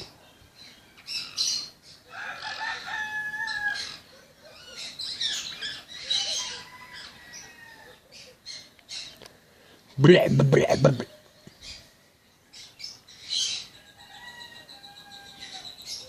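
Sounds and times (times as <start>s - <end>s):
long steady bird calls: 0.0s - 16.0s.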